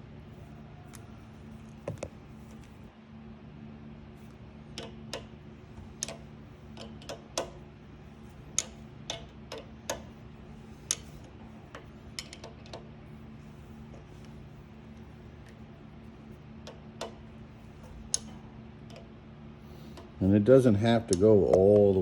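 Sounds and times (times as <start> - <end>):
sharp metallic clicks: 4.7 - 7.6.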